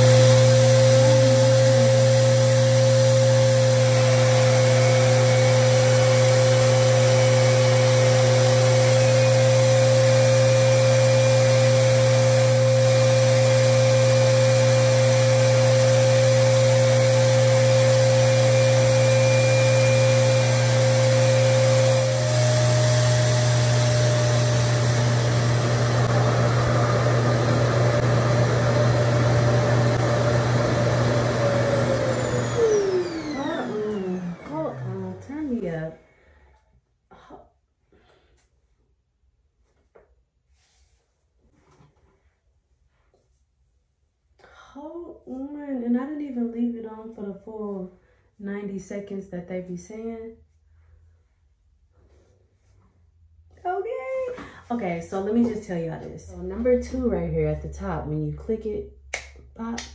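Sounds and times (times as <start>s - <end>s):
hair dryer motor whine: 0.0s - 35.9s.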